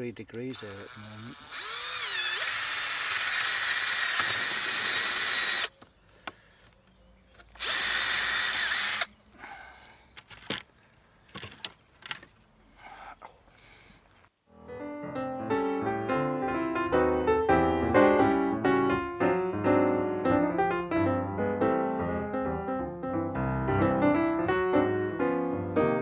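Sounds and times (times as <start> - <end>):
power drill boring through wood: 0.4 - 5.7, 7.6 - 9.1
piano music: 14.5 - 26.0.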